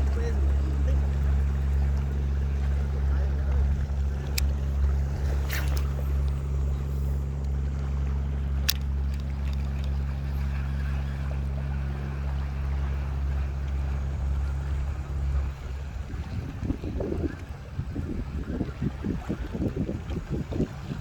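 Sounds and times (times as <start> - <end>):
boat engine droning: 0.0 - 21.0
sharp clicks: 4.1 - 7.9, 8.6 - 10.0.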